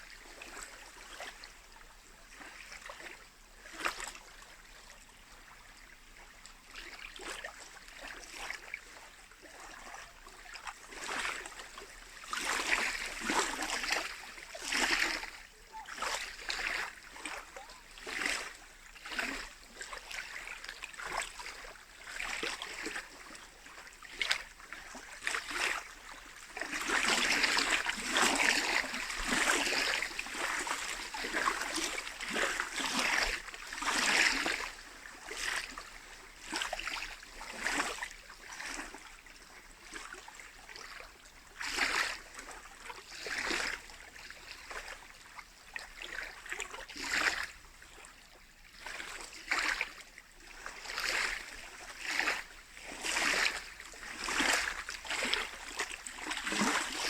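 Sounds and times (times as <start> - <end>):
lake waves splashing on shore: 24.1 - 39.0, 50.6 - 57.0.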